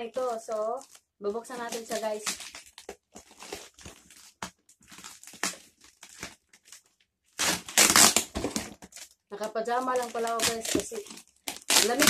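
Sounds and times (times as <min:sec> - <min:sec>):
packaging crinkling: 0:00.0 - 0:12.0
loud crumpling rustle: 0:00.3 - 0:09.1.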